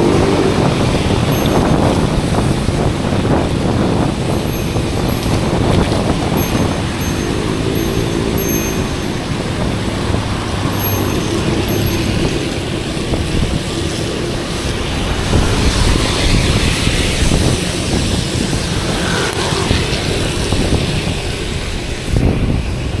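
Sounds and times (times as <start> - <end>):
motor traffic: 0.0 - 23.0
wind on microphone: 0.0 - 23.0
tyres hissing on wet road: 9.0 - 23.0.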